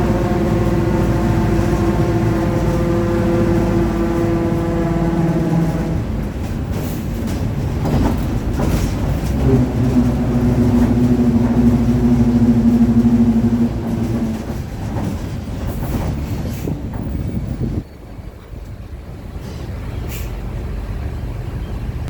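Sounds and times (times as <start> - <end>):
differential whining: 0.0 - 6.4, 9.2 - 15.2
bus engine and road rumble: 0.0 - 22.0
knocks and rattles: 6.2 - 17.8.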